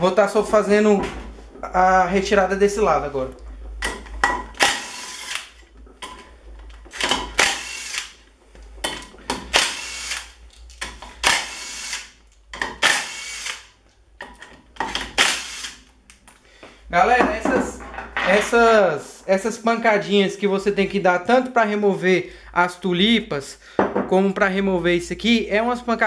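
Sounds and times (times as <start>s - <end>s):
power driver bursts: 6.9s - 8.2s, 9.5s - 10.4s, 11.2s - 12.1s.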